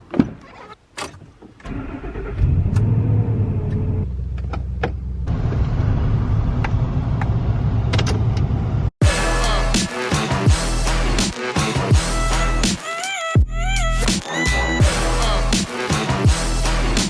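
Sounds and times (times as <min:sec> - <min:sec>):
engine cranking and starting: 0:01.6 - 0:04.8
engine running with low rumble: 0:02.3 - 0:08.9.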